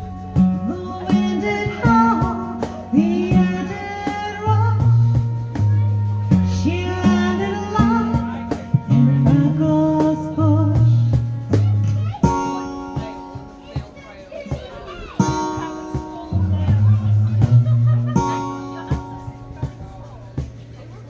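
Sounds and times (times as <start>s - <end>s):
person singing: 0.0s - 5.6s, 6.4s - 11.2s
folk band playing: 0.0s - 21.0s.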